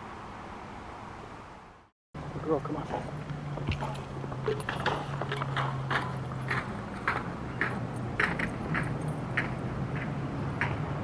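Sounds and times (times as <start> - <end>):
footsteps crunching on trail: 3.2 - 7.8.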